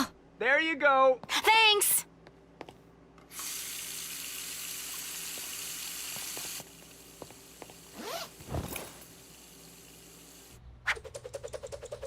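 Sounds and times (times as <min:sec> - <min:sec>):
water running: 0:03.3 - 0:10.6.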